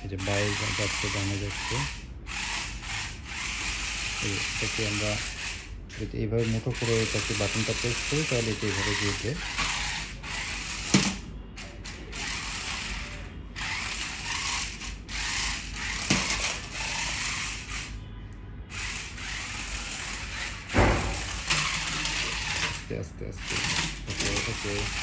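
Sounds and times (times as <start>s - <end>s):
toy car motor whirring: 0.0s - 18.0s, 18.7s - 25.0s
sharp knocks: 20.7s - 21.5s.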